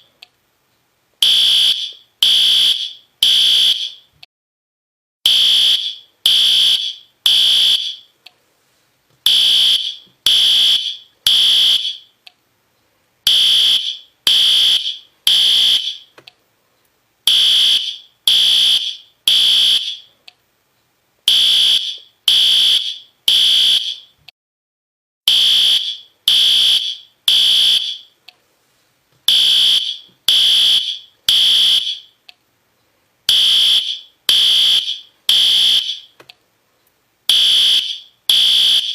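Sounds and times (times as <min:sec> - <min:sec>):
fire alarm horn beeps: 0:01.2 - 0:04.1, 0:05.3 - 0:08.1, 0:09.3 - 0:12.1, 0:13.3 - 0:16.1, 0:17.3 - 0:20.1, 0:21.3 - 0:24.1, 0:25.3 - 0:28.2, 0:29.3 - 0:32.2, 0:33.3 - 0:36.1, 0:37.3 - 0:38.9.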